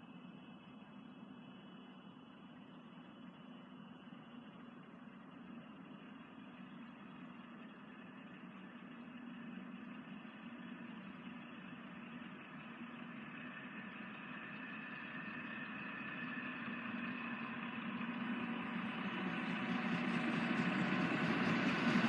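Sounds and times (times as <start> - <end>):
train approaching: 11.7 - 22.0.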